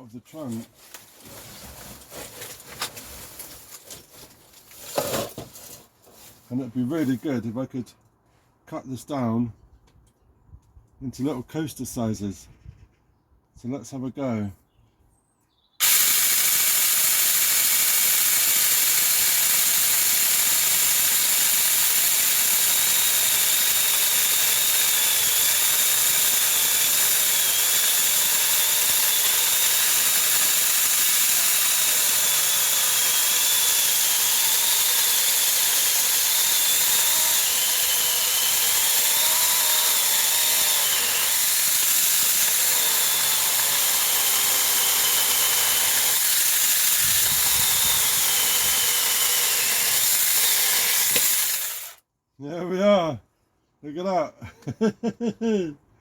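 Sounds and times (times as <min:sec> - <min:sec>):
electric chainsaw cutting wood: 0:15.8 - 0:52.0.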